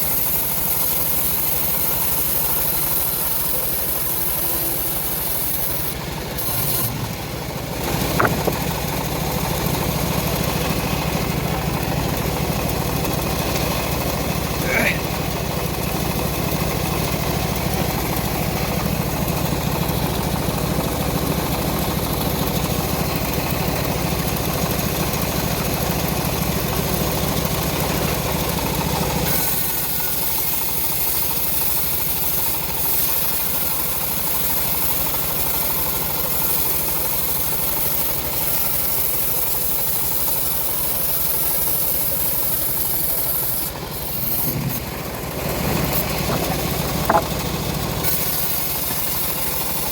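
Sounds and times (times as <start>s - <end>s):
bandsaw sawmill sawing logs: 0.0s - 49.9s
low engine rumble: 3.1s - 30.6s, 40.3s - 49.9s.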